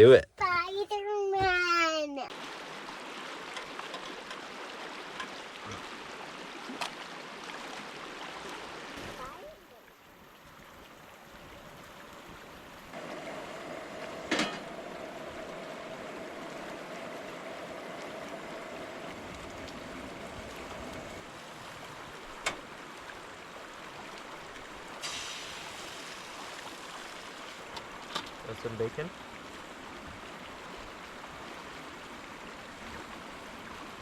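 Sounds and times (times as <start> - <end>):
river rushing: 12.8 - 34.0.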